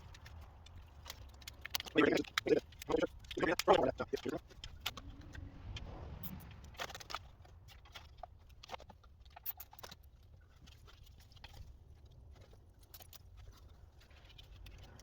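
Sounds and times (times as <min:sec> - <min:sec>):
low steady rumble: 0:00.0 - 0:09.4
small clicks and rustles: 0:00.0 - 0:15.0.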